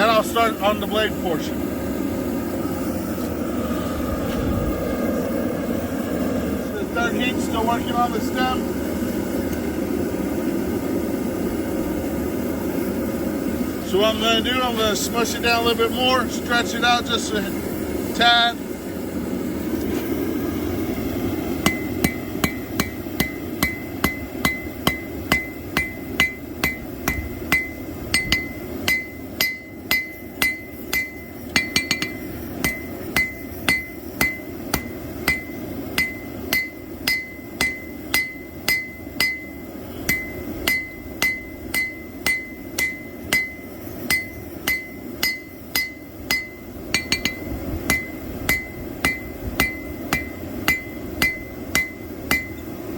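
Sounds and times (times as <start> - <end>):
low rumble: 1.6 - 7.7
hammer striking steel on anvil: 21.6 - 52.7.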